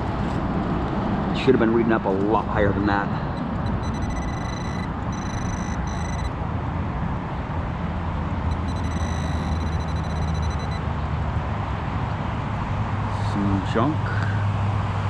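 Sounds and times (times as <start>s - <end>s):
metal detector high-pitched tone: 3.4s - 6.3s, 8.5s - 10.8s.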